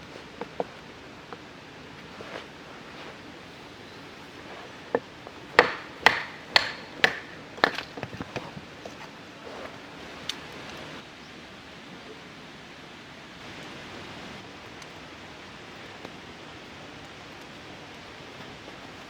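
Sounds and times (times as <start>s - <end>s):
knife batoned through firewood: 0.0s - 10.9s.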